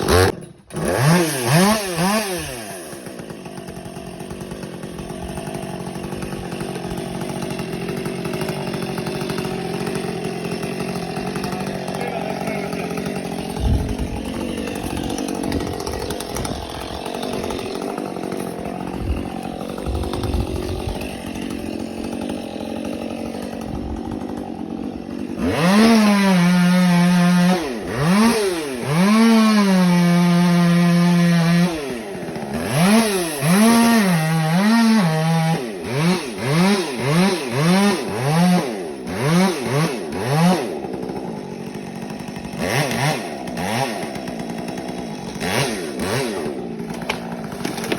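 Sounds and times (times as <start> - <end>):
chainsaw revving: 0.0 - 47.9
low rumbling: 12.4 - 22.2.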